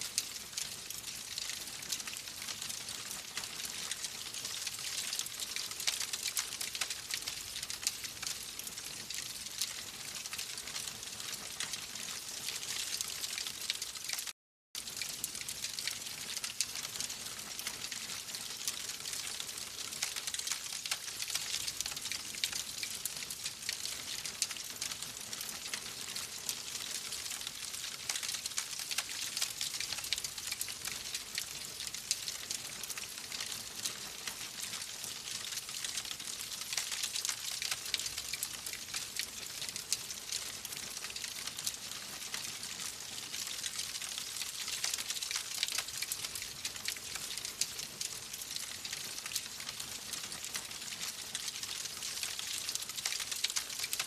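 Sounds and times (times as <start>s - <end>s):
wood fire crackling: 0.1s - 54.0s.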